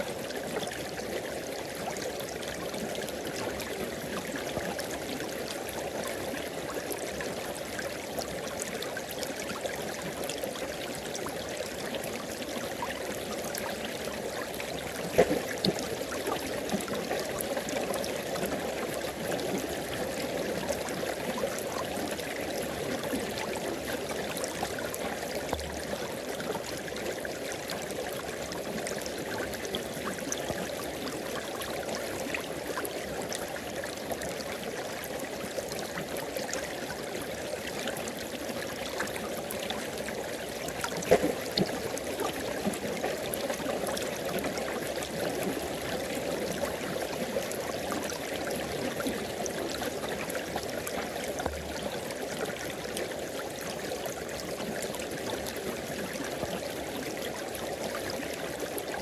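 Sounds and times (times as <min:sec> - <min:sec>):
river water flowing over rocks: 0:11.5 - 0:59.0
water splash: 0:15.0 - 0:16.0, 0:41.0 - 0:41.8.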